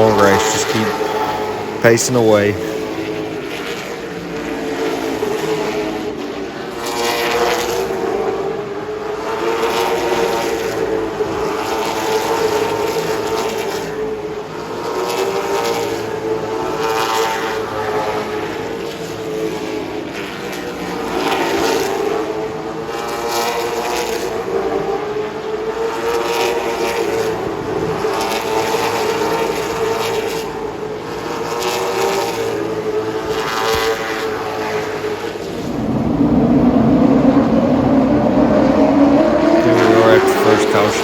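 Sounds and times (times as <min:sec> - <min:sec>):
race car engines passing: 0:00.0 - 0:41.0
deep loud engine: 0:35.6 - 0:41.0.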